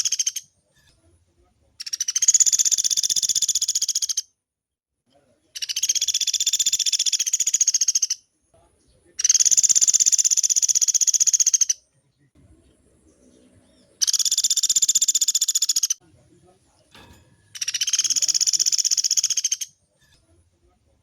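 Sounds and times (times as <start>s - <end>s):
woodpecker rattling trills: 0.0s - 0.4s, 1.8s - 4.2s, 5.6s - 8.2s, 9.2s - 11.8s, 14.0s - 16.0s, 17.5s - 19.8s.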